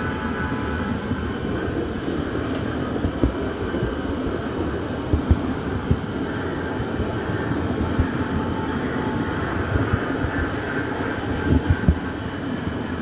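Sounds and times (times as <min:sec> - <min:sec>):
low thumps of train: 0:00.0 - 0:12.4
train rumbling on track: 0:00.0 - 0:13.0.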